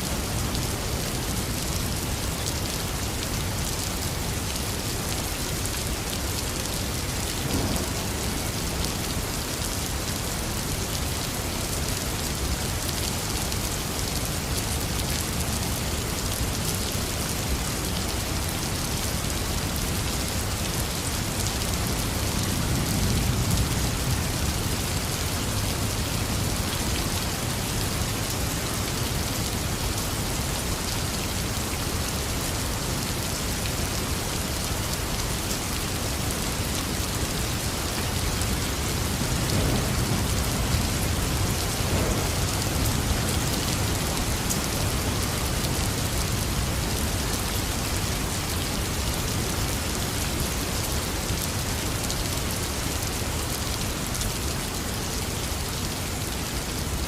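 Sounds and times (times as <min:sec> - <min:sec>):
heavy rain falling: 0:00.0 - 0:57.0
thunder rumble: 0:07.4 - 0:08.3, 0:39.1 - 0:43.4.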